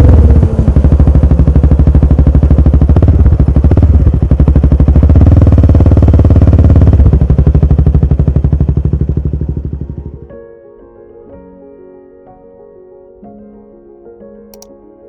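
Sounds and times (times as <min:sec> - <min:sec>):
motorcycle engine pulsing exhaust: 0:00.0 - 0:10.3.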